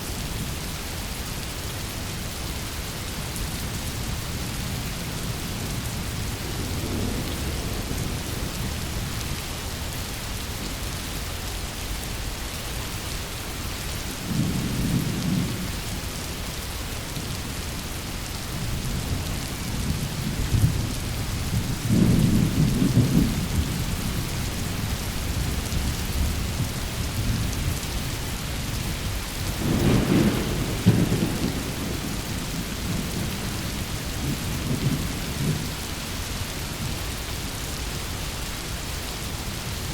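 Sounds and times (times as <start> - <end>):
steady rain hiss: 0.0 - 39.9
thunder rolling: 29.5 - 35.7.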